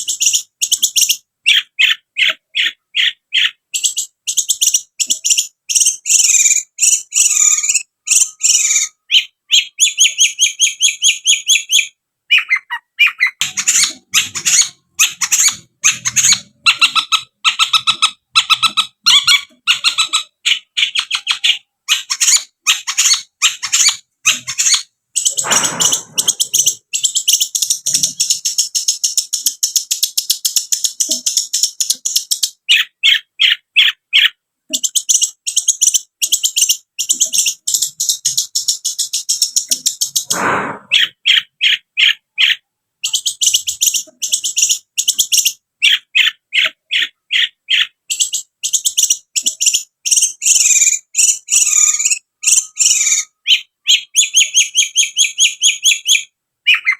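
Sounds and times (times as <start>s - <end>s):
harsh rasping bird call: 12.3s - 27.1s, 40.1s - 42.7s
shrike chattering song: 12.3s - 32.8s.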